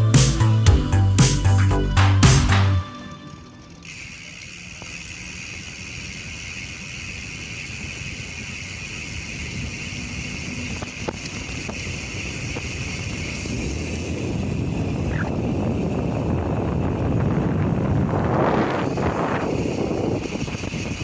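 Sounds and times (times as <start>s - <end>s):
bike clicks: 0.0s - 21.0s
wind rumbling on microphone: 4.8s - 21.0s.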